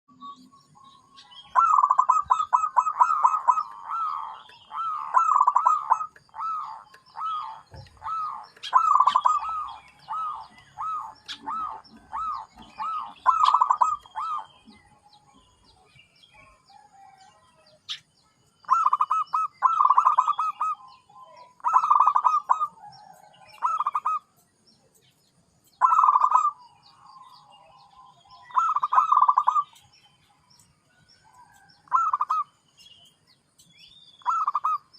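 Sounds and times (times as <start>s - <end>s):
dove cooing: 1.3s - 15.5s, 18.6s - 24.3s, 25.8s - 27.3s, 27.9s - 29.8s, 31.3s - 32.5s, 34.2s - 34.9s.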